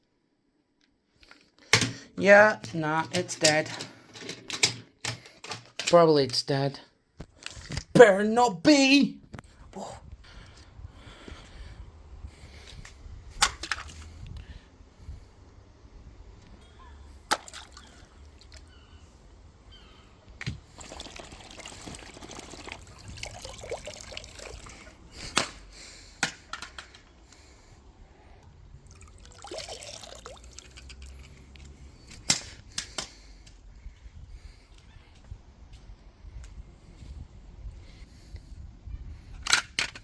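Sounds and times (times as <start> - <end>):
broken plastic pieces rattling: 3.0 - 6.4.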